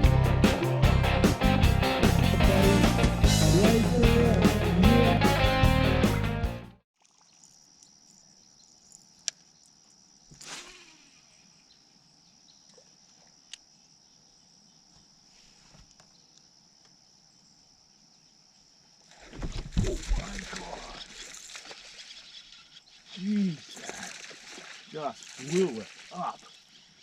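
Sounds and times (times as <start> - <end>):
guitar music: 0.0 - 6.8
crickets trilling: 7.0 - 27.0.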